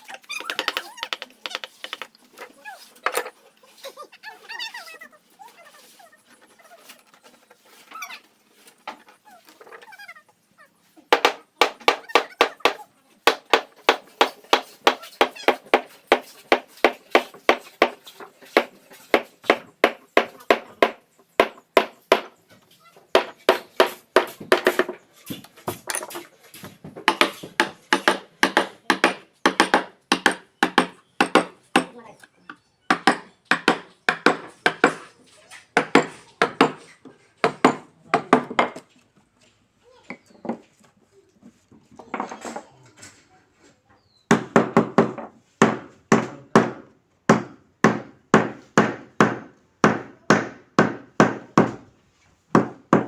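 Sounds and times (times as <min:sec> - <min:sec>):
hand tool striking wood: 0:00.4 - 0:02.1, 0:11.1 - 0:22.4, 0:23.1 - 0:26.1, 0:26.9 - 0:32.0, 0:32.9 - 0:35.1, 0:35.8 - 0:38.8, 0:44.3 - 0:51.8, 0:52.6 - 0:53.0.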